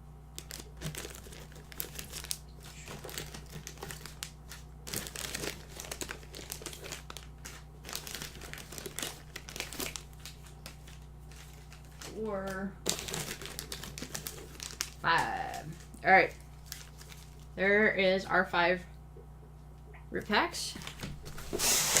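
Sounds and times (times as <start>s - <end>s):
plastic wrappers crinkling: 0.3s - 17.6s.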